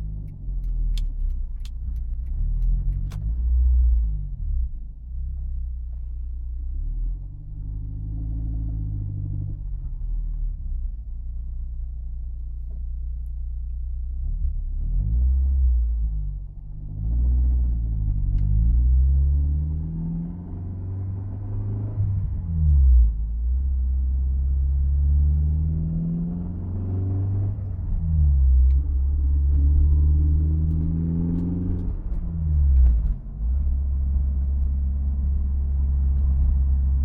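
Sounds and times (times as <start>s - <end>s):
car engine rising and falling: 14.0s - 37.0s.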